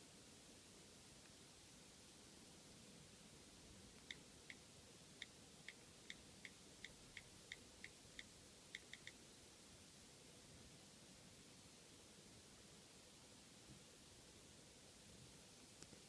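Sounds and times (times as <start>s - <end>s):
phone keyboard tapping ticks: 5.2s - 9.2s.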